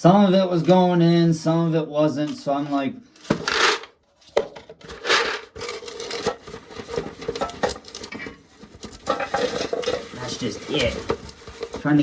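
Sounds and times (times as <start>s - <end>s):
corn cobs crackling in sheller: 3.3s - 12.0s.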